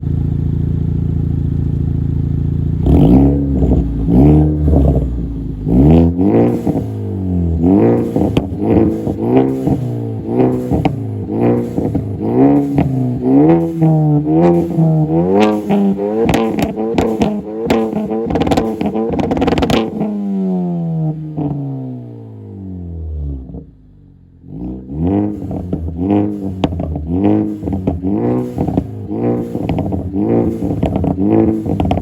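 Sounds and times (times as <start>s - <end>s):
car engine idling and revving: 0.0s - 32.0s
exhaust pops and crackles: 6.4s - 20.2s, 25.3s - 32.0s.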